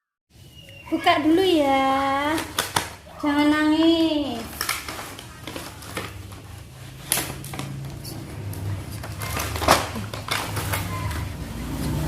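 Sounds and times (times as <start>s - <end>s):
plastic toys rustling and clicking: 1.0s - 12.0s.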